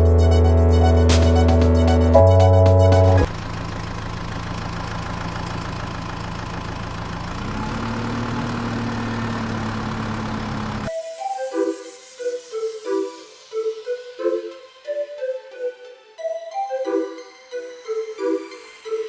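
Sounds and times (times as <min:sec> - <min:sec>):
electronic music: 0:00.0 - 0:03.3
vehicle engine idling: 0:00.0 - 0:10.9.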